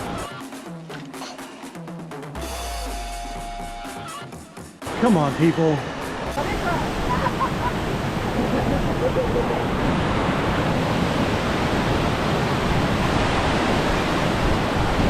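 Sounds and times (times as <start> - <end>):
waterfall rushing: 4.8 - 15.0.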